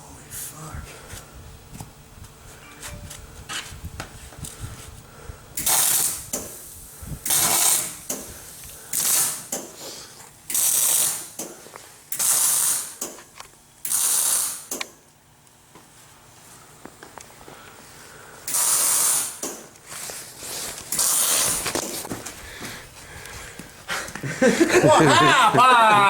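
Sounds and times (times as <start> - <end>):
arc welding crackling hiss: 5.6 - 11.5, 12.1 - 13.2, 13.8 - 15.0, 18.5 - 22.1.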